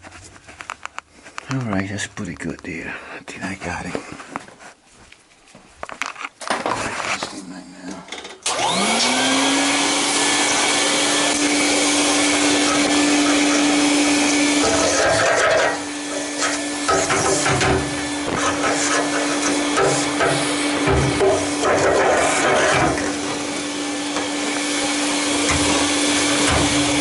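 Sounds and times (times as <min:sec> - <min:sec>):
vacuum cleaner whining: 0:08.4 - 0:27.0.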